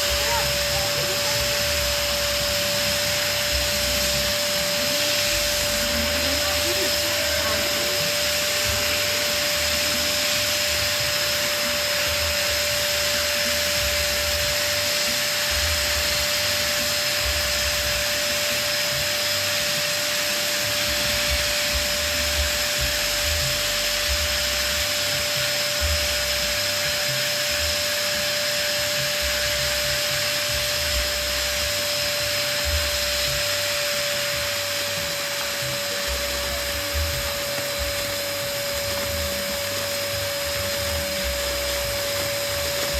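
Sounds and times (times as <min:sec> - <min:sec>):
electric balloon pump whining: 0:00.0 - 0:42.9.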